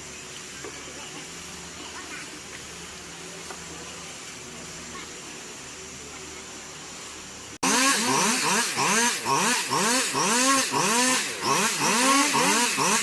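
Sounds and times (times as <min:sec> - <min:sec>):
chainsaws revving and cutting: 0:07.6 - 0:13.0.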